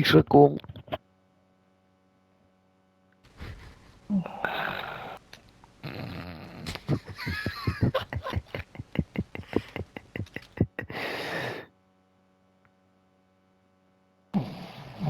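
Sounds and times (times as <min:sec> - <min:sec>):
men laughing hard: 0:06.6 - 0:11.6.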